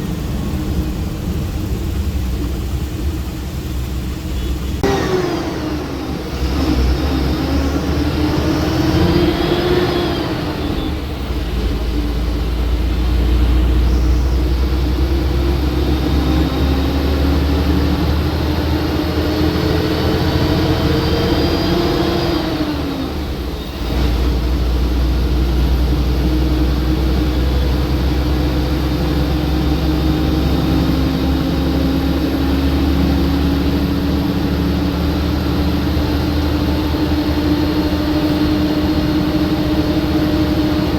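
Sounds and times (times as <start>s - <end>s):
bus diesel engine pulling: 0.0s - 40.9s.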